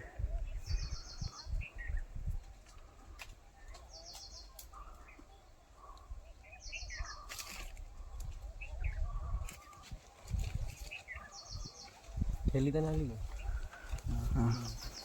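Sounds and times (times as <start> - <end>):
bird chirps: 3.5 - 9.8, 13.3 - 15.0.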